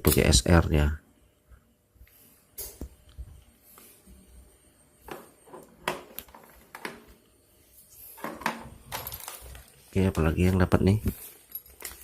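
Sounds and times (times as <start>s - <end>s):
objects clicking and tapping: 11.0s - 12.0s.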